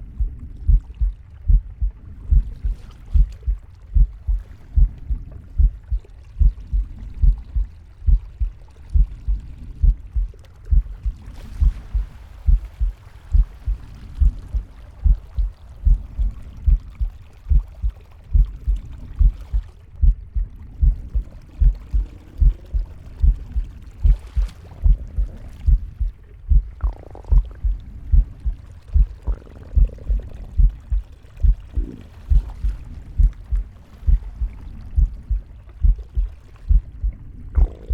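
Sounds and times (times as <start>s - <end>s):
heartbeat thumps: 0.0s - 37.9s
stomach growling: 0.0s - 37.9s.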